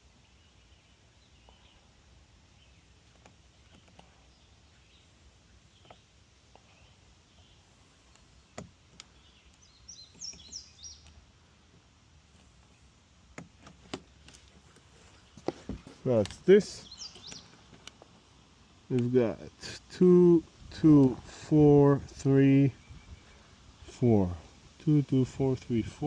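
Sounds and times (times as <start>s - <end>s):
small birds chirping: 0.0s - 26.0s
sharp clicks: 8.0s - 11.2s.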